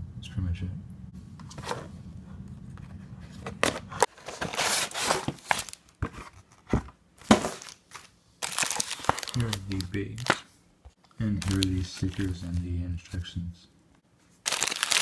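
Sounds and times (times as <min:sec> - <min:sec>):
low hum: 0:00.0 - 0:04.0
packaging crinkling and rustling: 0:03.3 - 0:10.5, 0:11.3 - 0:12.6, 0:14.4 - 0:15.0.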